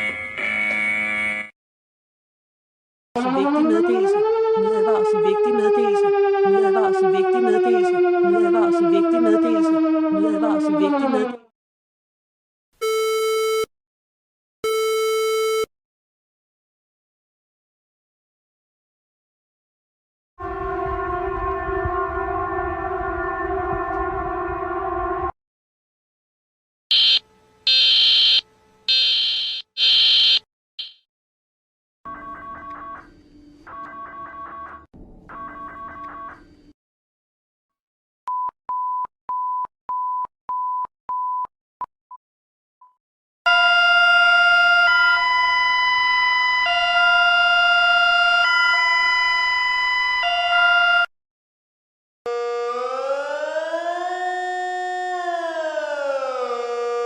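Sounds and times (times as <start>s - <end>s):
high-pitched electronic alarm beeps: 26.9s - 31.0s.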